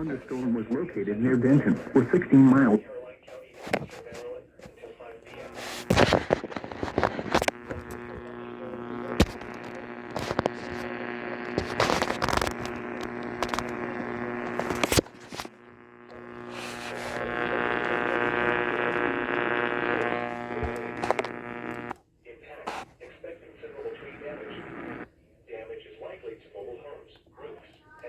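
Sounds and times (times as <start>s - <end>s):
electrical buzzing hum: 0.0s - 2.8s, 5.2s - 22.0s, 23.8s - 25.1s
static crackles: 0.0s - 25.1s.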